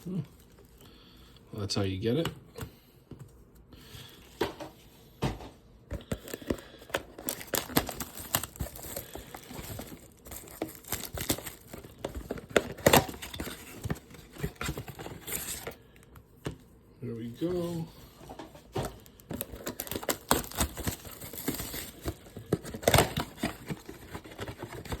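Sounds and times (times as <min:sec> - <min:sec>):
plastic wrapping crinkling and tearing: 0:06.1 - 0:15.8, 0:19.0 - 0:25.0.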